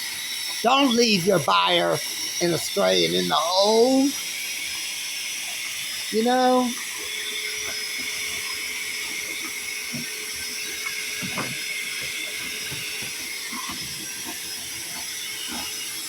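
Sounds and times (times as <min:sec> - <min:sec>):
steady hiss: 0:00.0 - 0:04.3.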